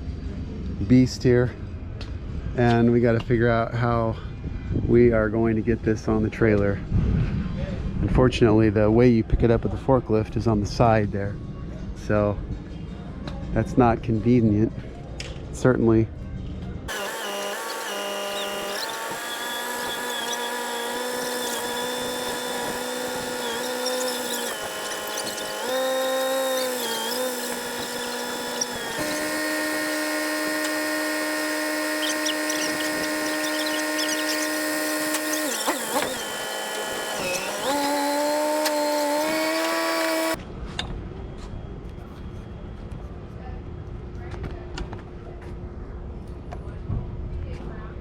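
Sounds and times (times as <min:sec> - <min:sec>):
motor whining: 0:16.9 - 0:40.4.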